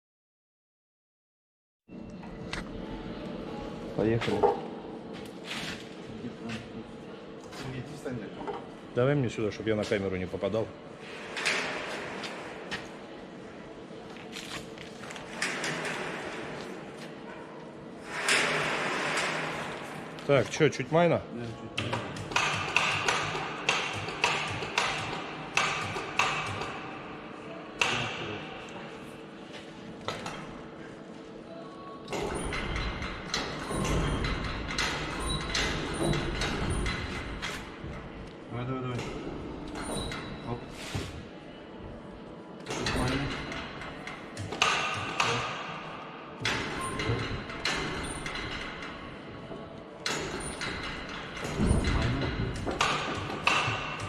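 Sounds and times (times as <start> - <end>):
heavy metal parts clanking: 32.2 - 37.9, 42.7 - 45.7, 50.0 - 54.0.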